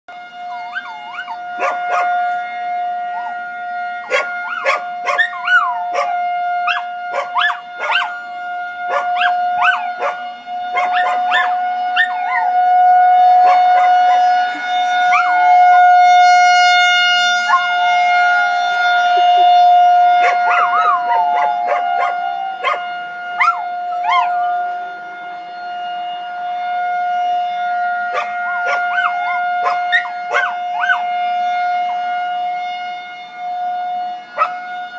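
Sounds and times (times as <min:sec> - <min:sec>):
wailing warning siren: 0:00.1 - 0:34.9
dogs barking and yipping: 0:00.4 - 0:02.4, 0:03.0 - 0:03.4, 0:04.0 - 0:12.6, 0:13.4 - 0:15.7, 0:20.2 - 0:24.7, 0:28.1 - 0:31.0, 0:34.4 - 0:34.6
dogs howling: 0:00.4 - 0:16.0, 0:20.2 - 0:24.8, 0:28.1 - 0:31.1, 0:34.4 - 0:34.6.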